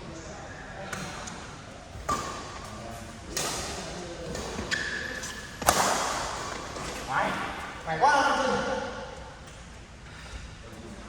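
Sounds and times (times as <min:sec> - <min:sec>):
rackets hitting shuttlecock: 0:03.3 - 0:07.0.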